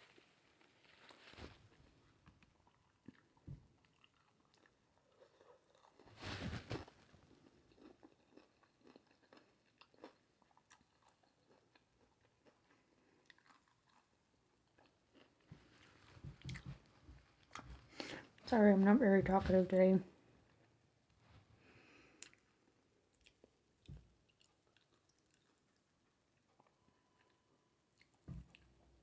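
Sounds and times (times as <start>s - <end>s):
chewing with wet mouth clicks: 2.6s - 6.0s, 7.4s - 15.4s, 22.2s - 22.5s, 23.1s - 28.7s.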